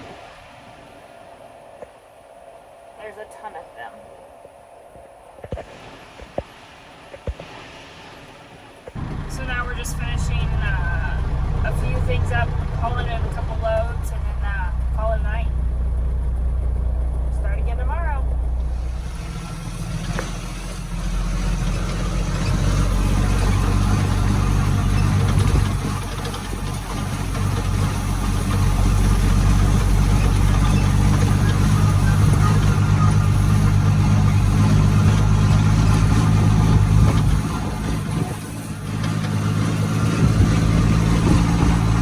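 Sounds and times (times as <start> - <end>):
vehicle engine running: 8.8 - 42.0.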